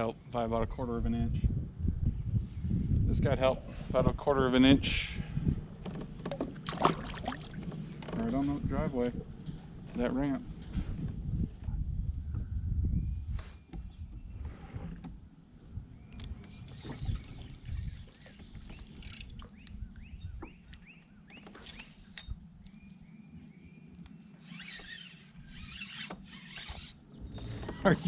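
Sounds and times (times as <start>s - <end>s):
low rumble of wind: 0.0s - 28.0s
water: 5.8s - 8.2s, 16.1s - 20.7s.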